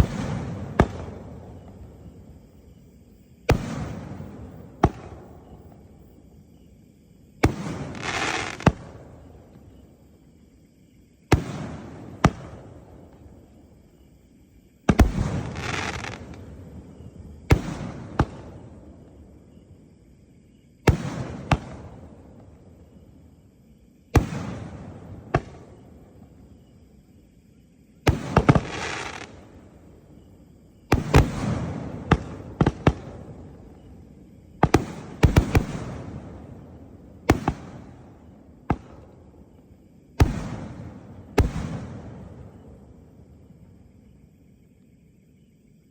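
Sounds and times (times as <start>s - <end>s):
firework bangs: 0.0s - 1.9s, 3.4s - 5.3s, 7.4s - 9.2s, 11.3s - 13.0s, 14.9s - 18.8s, 20.9s - 22.4s, 24.2s - 25.8s, 28.1s - 29.5s, 30.9s - 33.9s, 34.6s - 39.2s, 40.2s - 42.7s
firework hiss: 7.4s - 9.2s, 14.9s - 16.8s, 28.1s - 29.6s.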